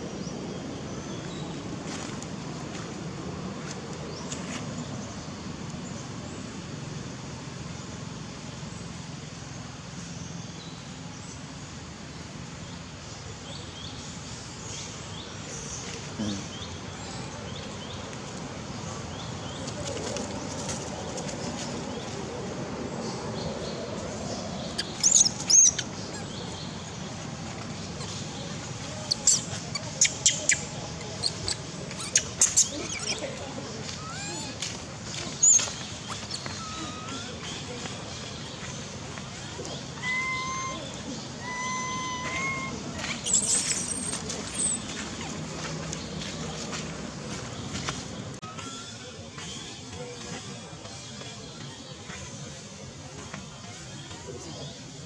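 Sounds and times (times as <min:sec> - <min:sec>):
outdoor background noise: 0:00.0 - 0:55.0
baby monkey squeaking: 0:24.8 - 0:26.4, 0:29.1 - 0:33.2, 0:34.0 - 0:34.6, 0:35.4 - 0:37.5, 0:40.0 - 0:45.3
high-pitched squealing cries: 0:34.0 - 0:34.6, 0:36.4 - 0:37.4, 0:39.9 - 0:44.2.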